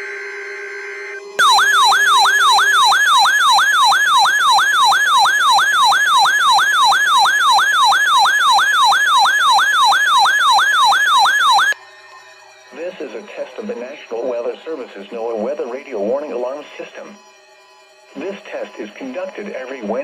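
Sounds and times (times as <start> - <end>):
siren-like alert tone: 0.0 - 11.8.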